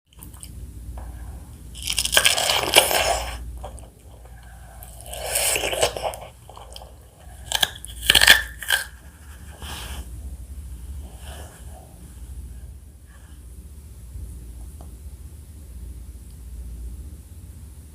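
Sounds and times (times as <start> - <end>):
crunchy fruit bites: 1.7 - 9.0.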